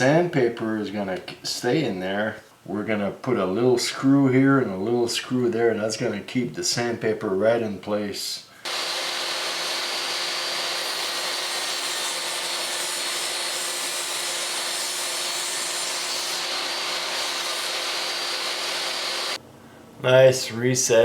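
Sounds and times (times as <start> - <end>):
power tool cutting wood: 8.6 - 19.4.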